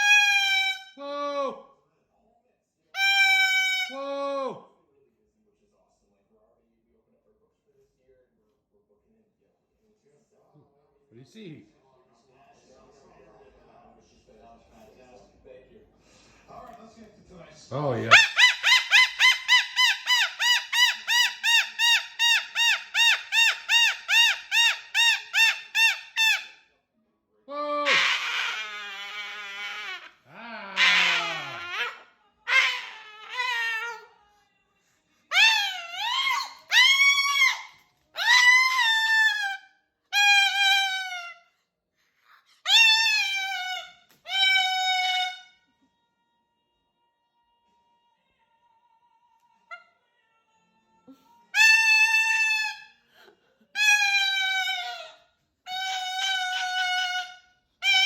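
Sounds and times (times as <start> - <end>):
cockatoo squeaking: 0.0 - 1.0, 3.0 - 4.0, 18.0 - 26.6, 27.8 - 34.1, 35.3 - 41.5, 42.6 - 45.6, 51.5 - 53.0, 53.8 - 58.0.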